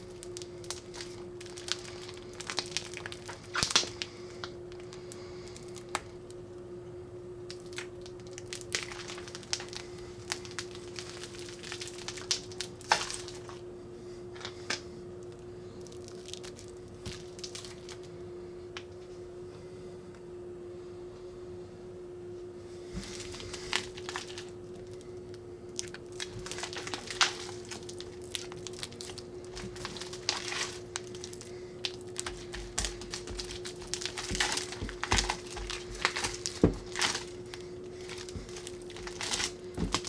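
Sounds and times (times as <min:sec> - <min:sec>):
slime squishing and popping: 0:00.0 - 0:04.1, 0:07.5 - 0:13.6, 0:15.8 - 0:18.1, 0:23.0 - 0:25.0, 0:25.7 - 0:40.0.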